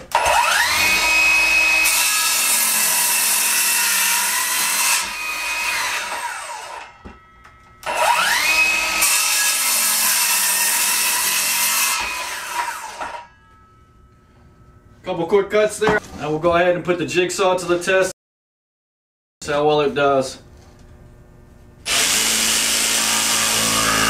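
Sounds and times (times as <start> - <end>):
circular saw cutting wood: 0.1 - 7.1, 7.8 - 13.4, 21.9 - 24.0.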